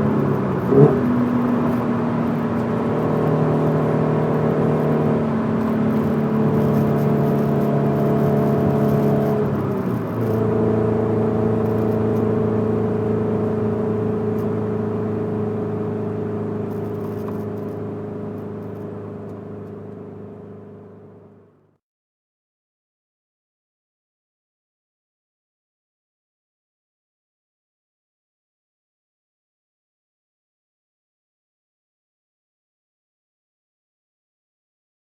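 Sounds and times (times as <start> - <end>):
car engine droning rumble: 0.0 - 21.7.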